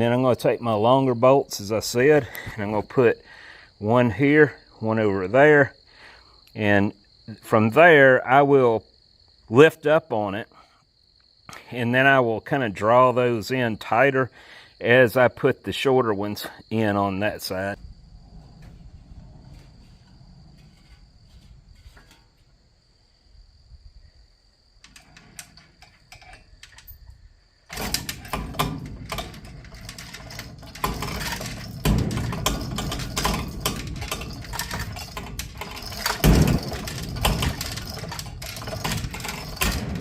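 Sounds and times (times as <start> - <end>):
crickets chirping: 0.0 - 40.0
machinery clattering and rattling: 27.7 - 40.0.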